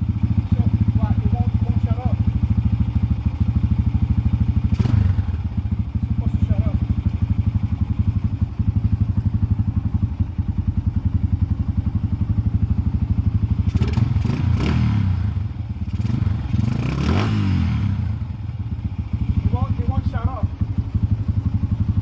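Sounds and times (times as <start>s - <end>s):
engine revving: 0.0s - 2.2s, 4.2s - 6.8s, 13.6s - 18.5s, 19.1s - 20.5s
motorcycle engine idling: 0.0s - 22.0s.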